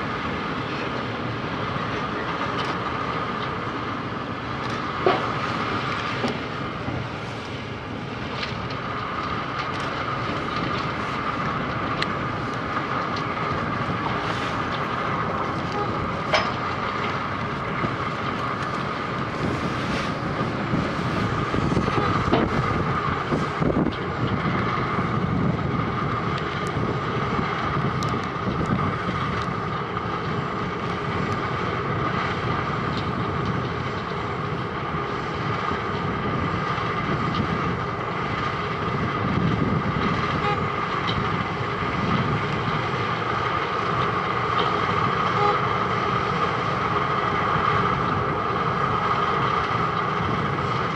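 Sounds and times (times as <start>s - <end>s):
machine rumble: 0.0s - 50.9s.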